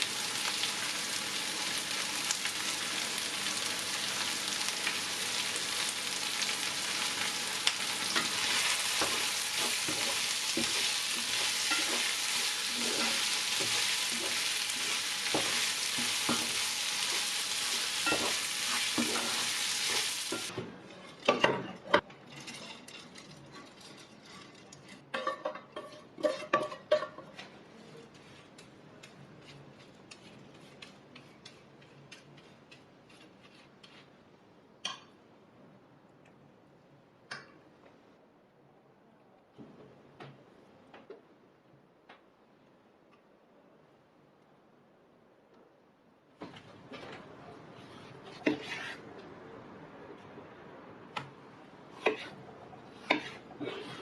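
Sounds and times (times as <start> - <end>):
food sizzling in oil: 0.0 - 20.5.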